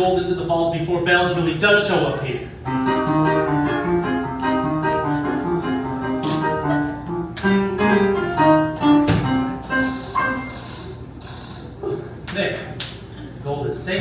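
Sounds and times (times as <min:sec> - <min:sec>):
piano playing: 0:02.6 - 0:11.7.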